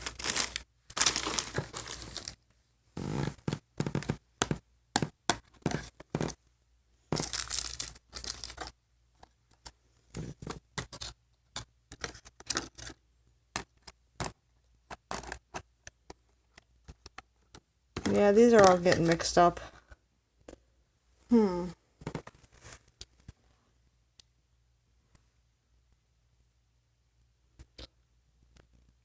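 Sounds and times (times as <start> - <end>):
plastic packaging rustling: 0.0 - 2.4, 7.2 - 8.7.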